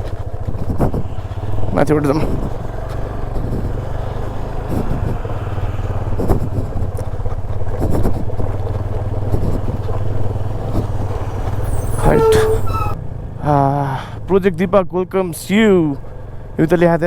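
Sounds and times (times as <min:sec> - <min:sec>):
motorcycle engine running: 0:00.0 - 0:12.0
knocks and rattles from bike: 0:00.0 - 0:13.0.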